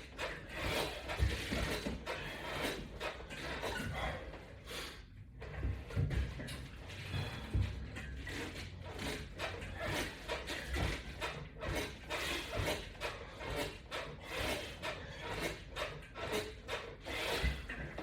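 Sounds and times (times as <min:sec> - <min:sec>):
resistance band rubbing: 0:07.2 - 0:18.0.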